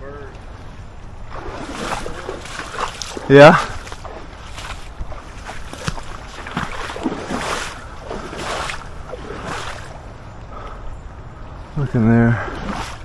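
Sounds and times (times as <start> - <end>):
water sloshing around wading legs: 1.0 - 10.2, 12.4 - 13.0.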